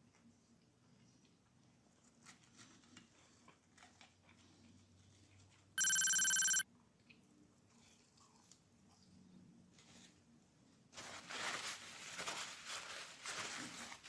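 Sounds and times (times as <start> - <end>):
electronic beep: 5.8 - 6.6.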